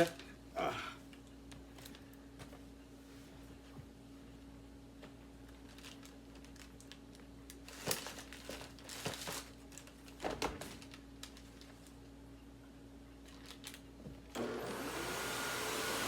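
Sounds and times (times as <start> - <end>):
packing material crinkling: 5.4 - 12.1, 13.2 - 14.0.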